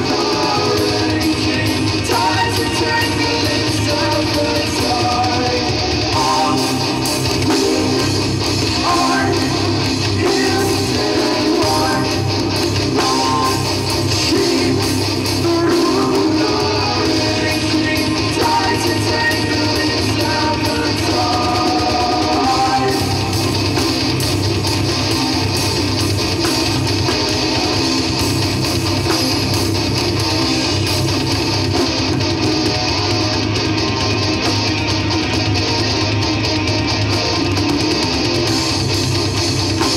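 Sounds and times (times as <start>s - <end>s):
heavy rock band playing: 0.0s - 39.9s
strummed electric guitars: 0.0s - 39.9s.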